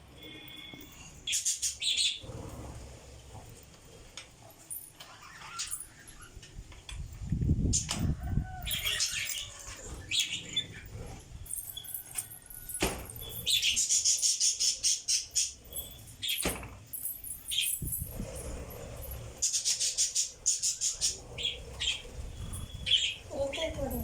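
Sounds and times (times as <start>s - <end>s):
lovebirds chirping: 0.1s - 2.5s, 7.7s - 24.0s.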